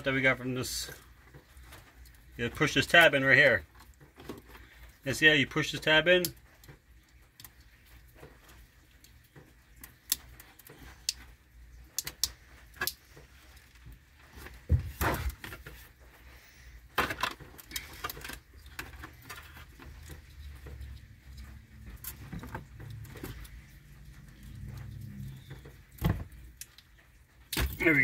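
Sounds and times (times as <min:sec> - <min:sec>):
plastic parts clicking and knocking: 0:03.0 - 0:05.0, 0:16.8 - 0:23.8
plastic clatter: 0:16.9 - 0:20.9.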